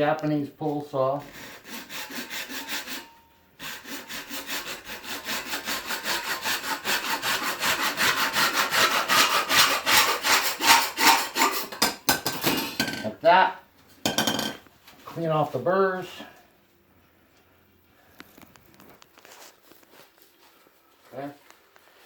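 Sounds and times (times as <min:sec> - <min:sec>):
hand saw cutting plastic pipe: 0:01.2 - 0:12.2.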